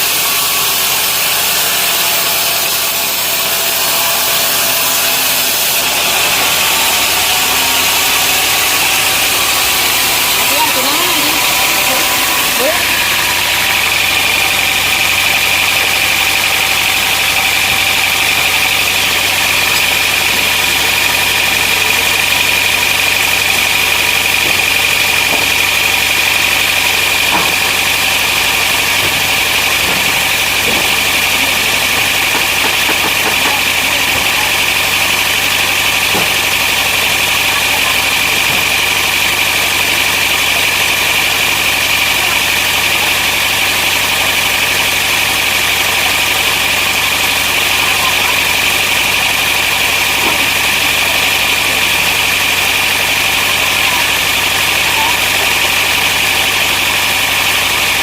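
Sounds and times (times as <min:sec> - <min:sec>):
high even whine: 0:00.0 - 0:58.0
sawmill machinery droning: 0:00.0 - 0:58.0.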